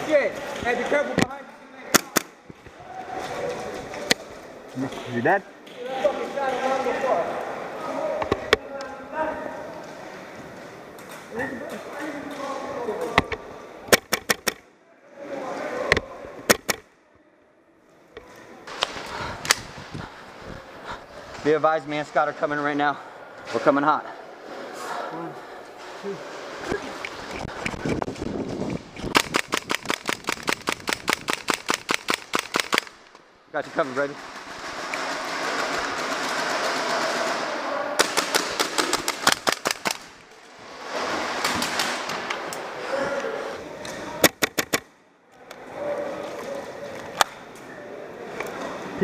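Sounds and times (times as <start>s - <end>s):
airsoft guns firing: 1.9s - 2.4s, 13.9s - 14.6s, 16.5s - 16.9s, 29.1s - 33.0s, 34.1s - 40.2s, 41.3s - 42.3s.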